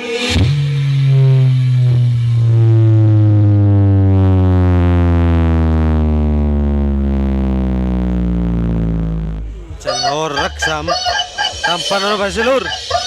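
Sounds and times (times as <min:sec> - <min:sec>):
synthesizer bass tone sliding down: 0:00.0 - 0:13.0.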